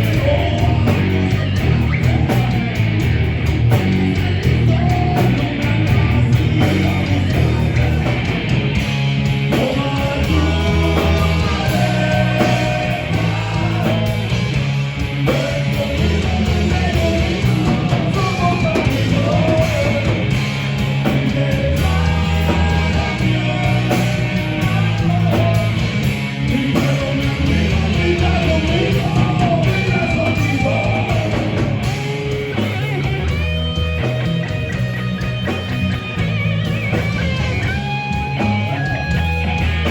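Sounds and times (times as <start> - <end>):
bass guitar: 0.0 - 39.9
drums: 0.0 - 39.9
electric guitar: 0.0 - 39.9
person singing: 9.5 - 32.8.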